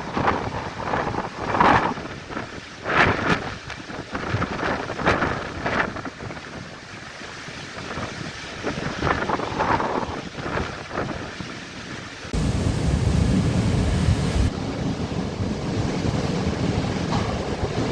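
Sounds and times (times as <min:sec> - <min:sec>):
storm waves surging: 0:00.0 - 0:17.9
strong wind: 0:00.0 - 0:17.9
wind buffeting microphone: 0:00.0 - 0:17.9
low rumble: 0:12.3 - 0:17.9.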